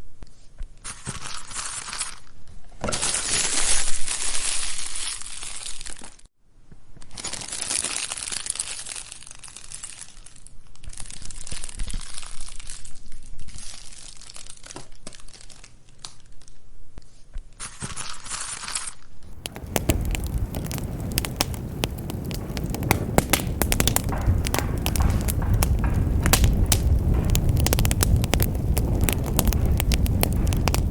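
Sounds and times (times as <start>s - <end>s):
wood fire crackling: 19.2s - 30.9s.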